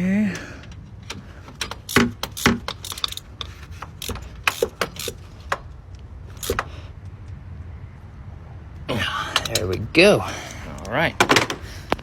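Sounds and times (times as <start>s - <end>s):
metallic clicks of hand tools: 0.7s - 6.7s.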